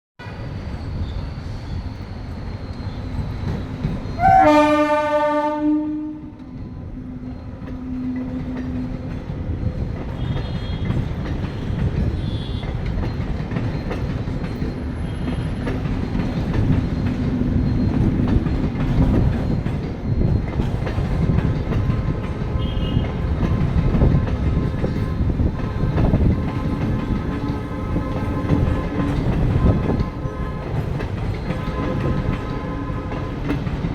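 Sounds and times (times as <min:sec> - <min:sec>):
train rumbling: 0:00.2 - 0:33.9
train horn blast: 0:04.2 - 0:06.4, 0:22.5 - 0:24.2, 0:25.1 - 0:33.6.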